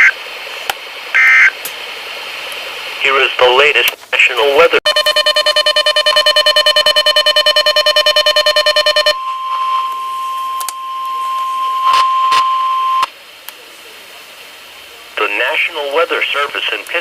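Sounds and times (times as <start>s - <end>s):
faint static: 0.0s - 12.0s
pulsing electronic alert beep: 4.9s - 9.4s
steady warning alarm tone: 4.9s - 13.0s.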